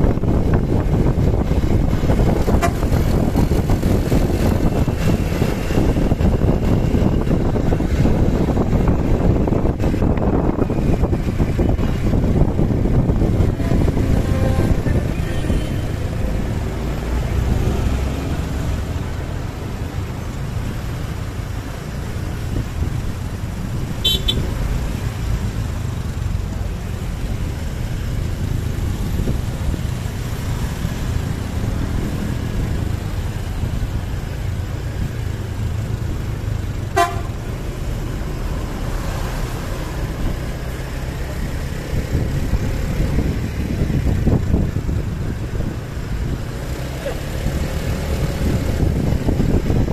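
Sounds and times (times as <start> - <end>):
road traffic rumble: 0.0 - 49.9.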